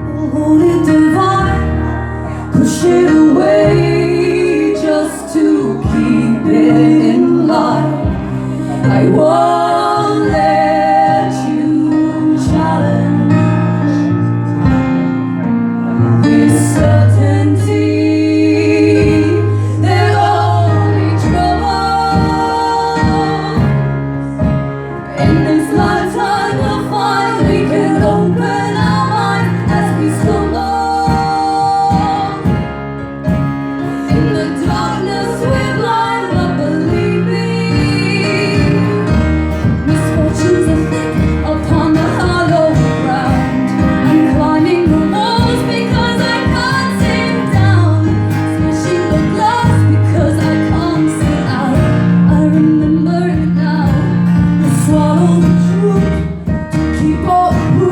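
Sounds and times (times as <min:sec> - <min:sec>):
person singing: 0:00.0 - 0:13.9, 0:25.0 - 0:32.7
guitar accompaniment with beat: 0:00.0 - 0:57.9.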